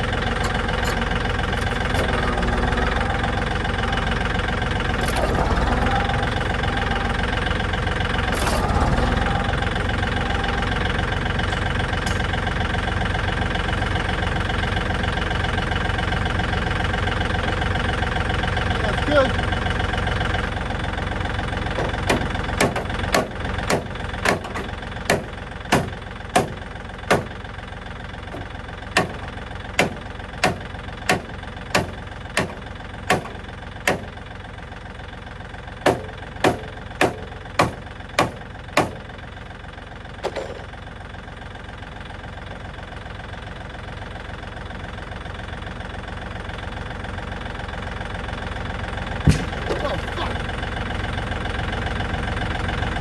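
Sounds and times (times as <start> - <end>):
tractor engine idling: 0.0 - 53.0
sharp knocks: 22.1 - 27.3, 35.9 - 39.0, 49.2 - 49.8.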